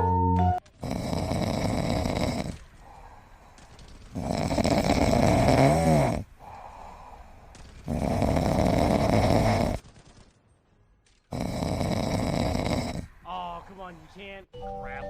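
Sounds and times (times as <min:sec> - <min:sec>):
pet snoring: 0:00.7 - 0:09.8, 0:11.3 - 0:13.2.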